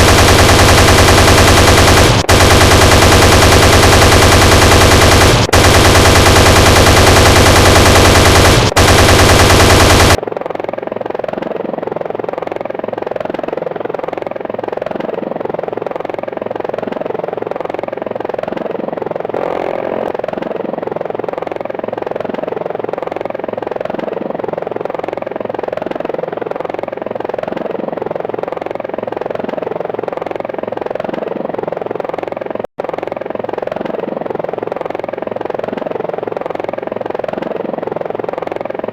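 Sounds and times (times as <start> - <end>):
helicopter chain gun firing: 0.0 - 10.2
helicopter rotor fluttering: 0.0 - 38.9.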